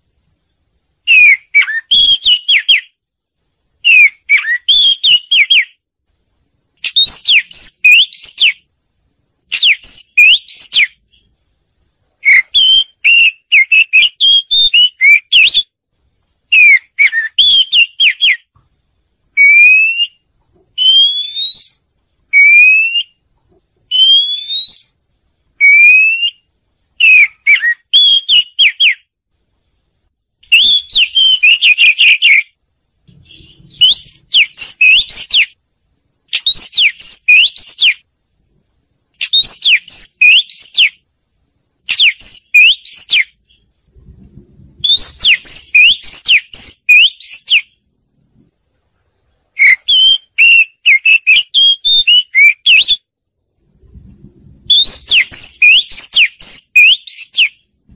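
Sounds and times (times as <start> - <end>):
bird singing whistled phrases: 1.1 - 3.0, 3.8 - 5.8, 6.8 - 8.6, 9.5 - 11.3, 12.2 - 15.7, 16.5 - 18.5, 19.4 - 20.2, 20.8 - 23.2, 23.9 - 25.0, 25.6 - 29.1, 30.4 - 35.6, 36.3 - 38.0, 39.2 - 41.0, 41.9 - 43.6, 44.8 - 47.8, 49.6 - 53.1, 54.7 - 57.6.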